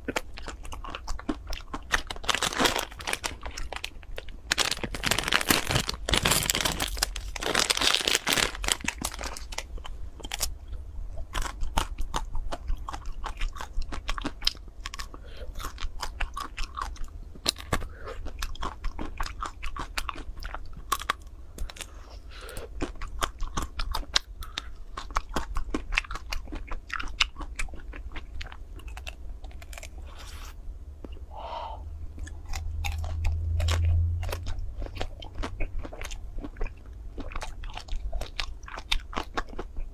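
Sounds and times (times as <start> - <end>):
chewing: 0.0 - 4.4, 8.8 - 31.2, 32.2 - 39.9
crunching chocolate shell: 0.0 - 10.6.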